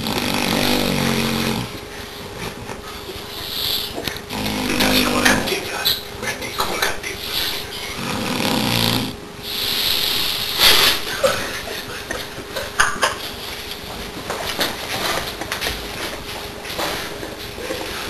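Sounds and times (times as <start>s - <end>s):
man snoring: 0.0s - 1.7s, 4.3s - 5.6s, 7.9s - 10.4s
small snorts: 0.0s - 1.8s, 3.3s - 5.0s, 7.3s - 11.1s.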